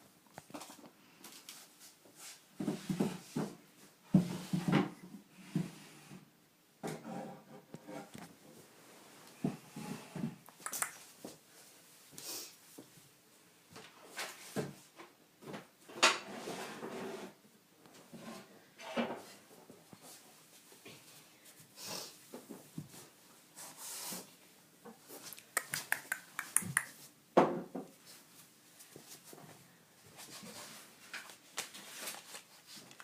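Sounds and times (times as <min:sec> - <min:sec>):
rustling: 0:28.0 - 0:33.0.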